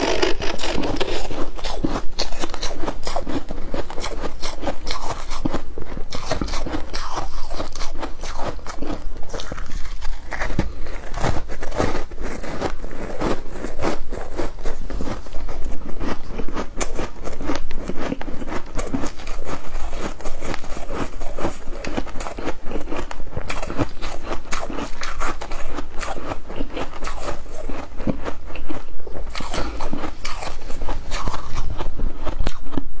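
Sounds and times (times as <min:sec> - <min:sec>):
ice being chewed with crunches: 0:00.0 - 0:32.9.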